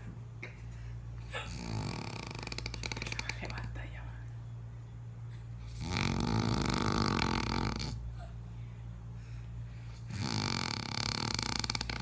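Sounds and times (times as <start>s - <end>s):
person snoring: 1.3s - 3.3s, 5.7s - 8.0s, 9.9s - 12.0s.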